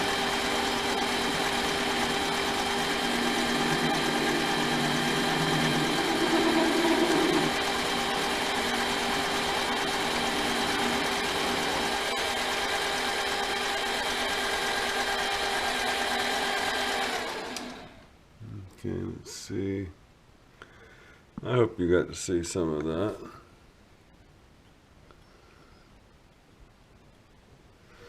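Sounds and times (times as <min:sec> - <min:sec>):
machine tool motor whine: 0:00.0 - 0:18.0.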